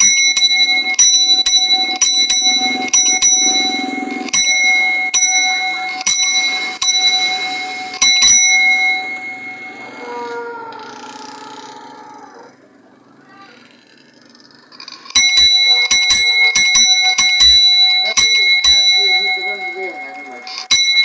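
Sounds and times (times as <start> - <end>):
mechanical doorbell ringing: 0.0 - 10.6, 14.8 - 21.0.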